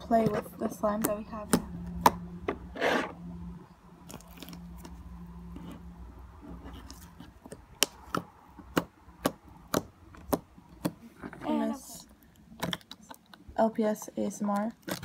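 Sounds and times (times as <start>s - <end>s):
low background hum: 0.0s - 15.0s
slime squishing: 4.0s - 13.6s, 14.4s - 15.0s.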